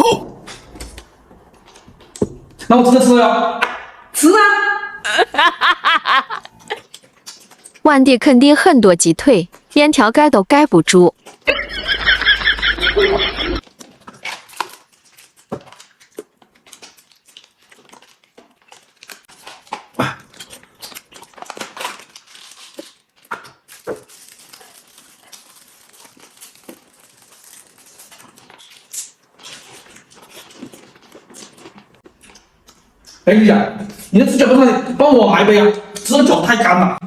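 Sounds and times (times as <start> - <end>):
people chewing: 5.0 - 7.8, 11.2 - 23.4, 24.2 - 33.3.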